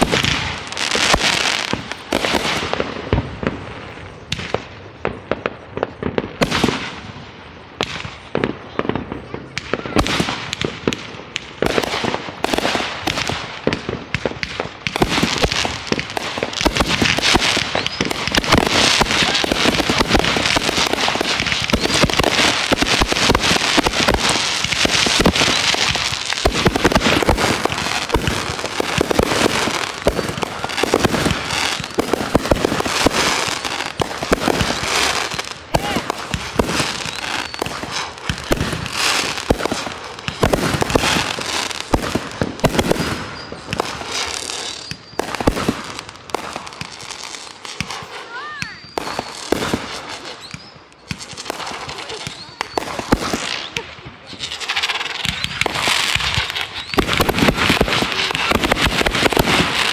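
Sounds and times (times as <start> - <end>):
fireworks cracking and popping: 0.0 - 59.9.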